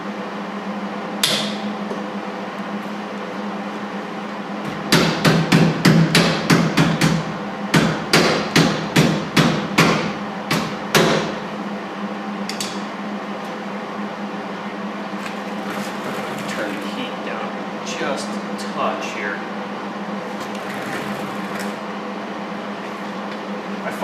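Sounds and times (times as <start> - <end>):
hammer tapping on sheet metal: 4.9 - 11.3.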